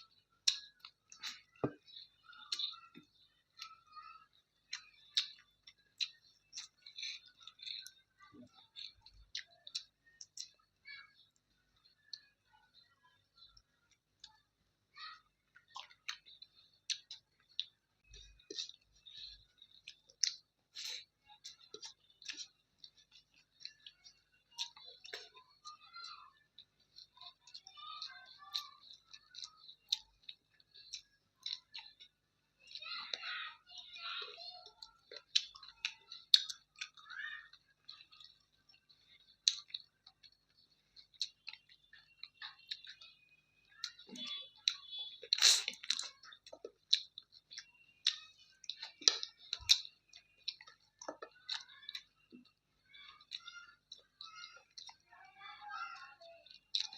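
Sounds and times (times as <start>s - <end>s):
mouth chewing and smacking: 0.0s - 55.1s, 56.4s - 56.9s
mouth clicks: 43.8s - 46.3s.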